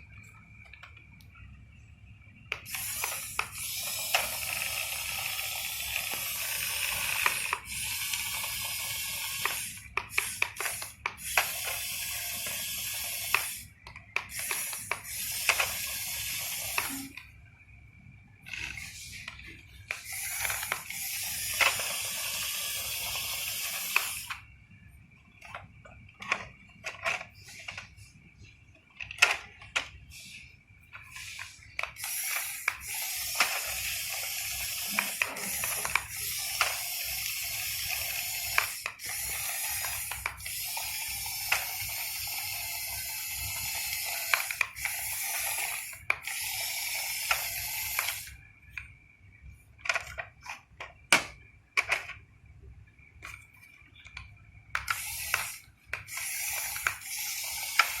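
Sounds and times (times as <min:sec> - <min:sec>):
faint high whine: 0:00.0 - 0:58.0
model motors running: 0:02.6 - 0:17.2, 0:19.9 - 0:24.4, 0:31.1 - 0:48.4, 0:54.8 - 0:58.0.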